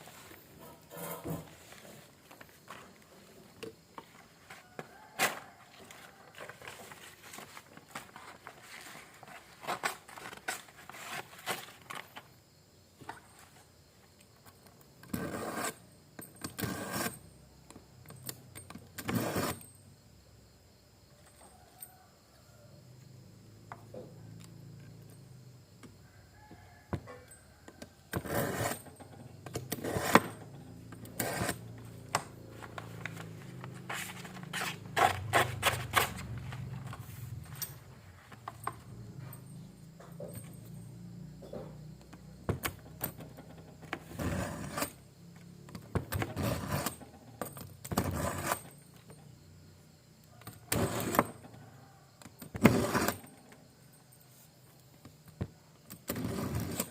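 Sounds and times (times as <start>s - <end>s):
knife scraping through sharpener: 16.6s - 17.2s, 19.0s - 19.6s, 28.2s - 29.0s, 29.6s - 30.5s, 31.1s - 31.7s, 44.2s - 45.0s, 48.1s - 48.7s.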